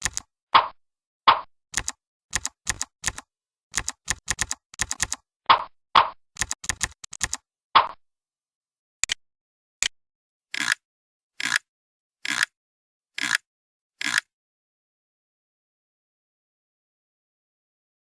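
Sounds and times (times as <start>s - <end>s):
deeper louder clicks: 0.0s - 8.0s
keyboard typing clacks: 0.0s - 8.0s.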